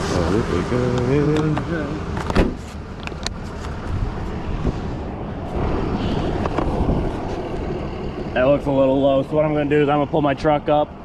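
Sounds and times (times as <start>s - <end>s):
highway traffic roar: 0.0s - 11.0s
wind on microphone: 3.8s - 8.7s.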